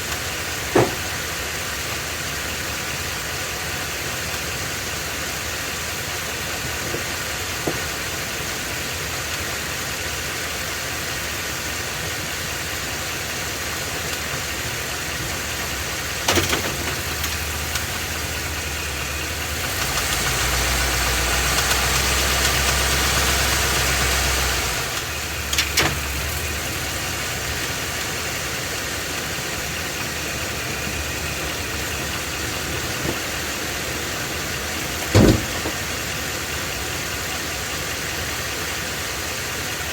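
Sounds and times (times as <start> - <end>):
truck engine idling: 0.0 - 39.9.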